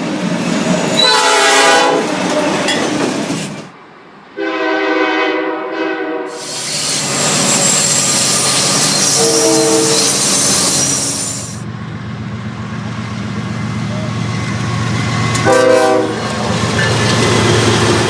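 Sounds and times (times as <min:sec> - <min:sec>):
rail and wheel noise: 0:00.0 - 0:18.0
train rumbling past: 0:00.0 - 0:18.0
locomotive air horn: 0:01.0 - 0:02.2, 0:04.4 - 0:06.5, 0:08.9 - 0:10.2, 0:15.4 - 0:16.4.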